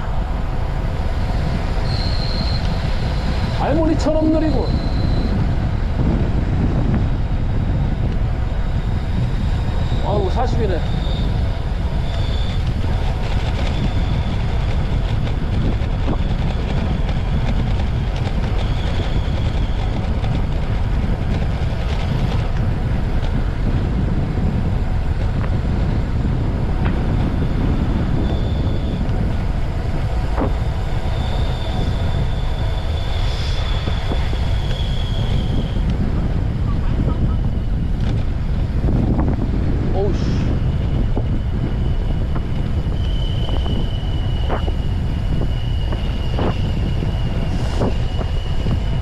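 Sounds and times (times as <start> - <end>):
wind rumble on microphone: 0.0 - 49.0
faint high whistle: 1.8 - 3.5, 4.4 - 5.4, 12.0 - 12.6, 31.0 - 35.8, 42.8 - 49.0.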